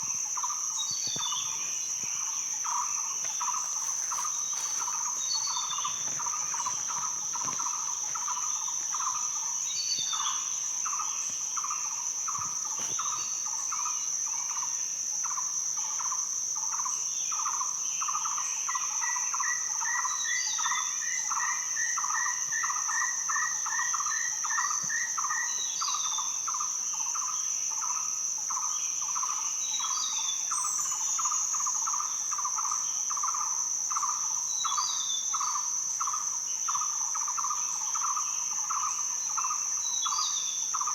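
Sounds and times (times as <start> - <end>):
insects droning: 0.0 - 40.9
bird calls: 0.4 - 11.0.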